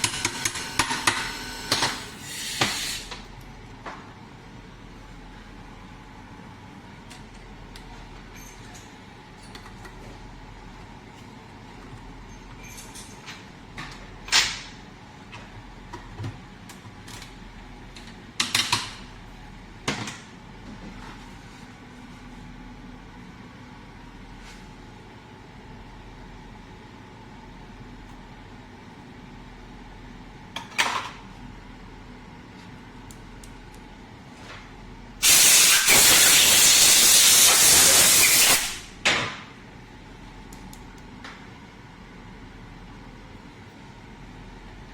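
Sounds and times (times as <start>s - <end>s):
pressurised gas hissing: 35.2s - 38.8s.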